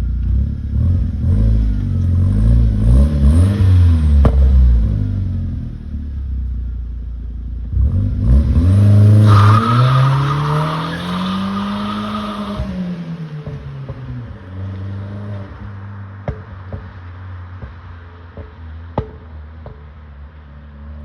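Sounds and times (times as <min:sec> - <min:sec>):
turbo car engine revving: 0:00.0 - 0:05.5.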